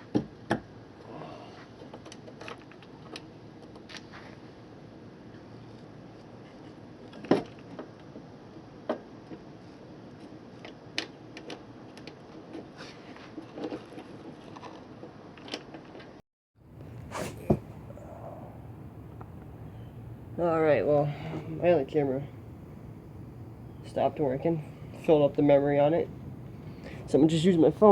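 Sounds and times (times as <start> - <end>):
background hiss: 16.6 - 27.9.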